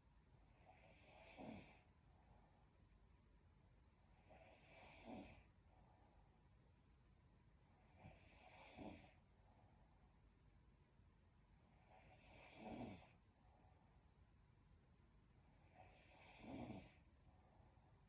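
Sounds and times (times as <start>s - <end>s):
woman snoring: 0.6s - 1.9s, 4.2s - 5.5s, 7.9s - 9.2s, 11.8s - 13.2s, 15.6s - 17.0s.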